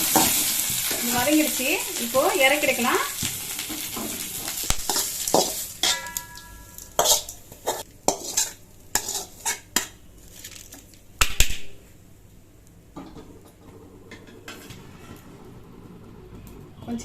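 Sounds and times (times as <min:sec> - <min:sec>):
metal spoon scraping a pan: 0:00.0 - 0:10.8
food sizzling: 0:00.0 - 0:11.1.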